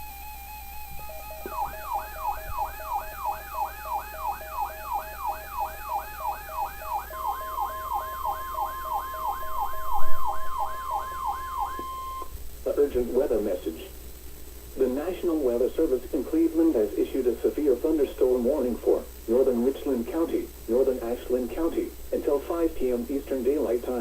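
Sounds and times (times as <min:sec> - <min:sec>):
pulsing low tone: 0:00.0 - 0:12.3
siren-like sweeping tone: 0:00.0 - 0:12.3
steady high alert tone: 0:00.0 - 0:12.3.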